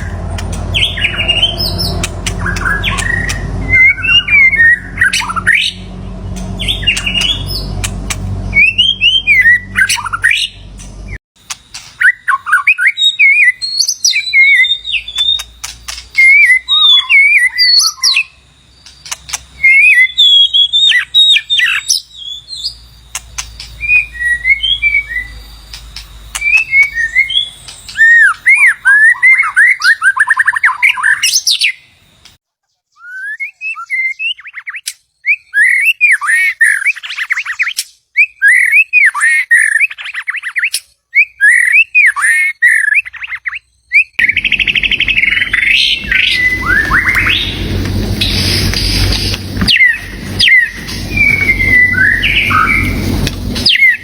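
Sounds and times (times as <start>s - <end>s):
bird singing whistled phrases: 0.0s - 5.9s, 6.6s - 10.6s, 12.0s - 31.9s, 32.9s - 54.0s
low steady hum: 44.2s - 54.0s.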